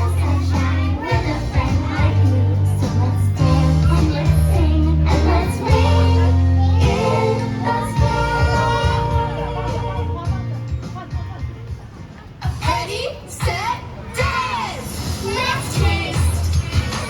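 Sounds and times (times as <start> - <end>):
young children singing: 0.0 - 10.2
music with sustained bass notes: 0.0 - 10.6.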